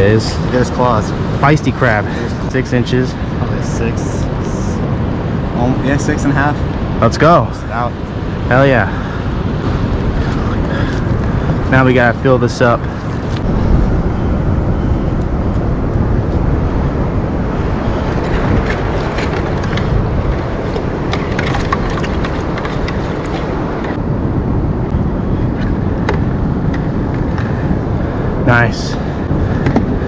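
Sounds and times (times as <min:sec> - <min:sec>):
surf: 0:00.0 - 0:24.0
wind buffeting microphone: 0:00.0 - 0:30.0.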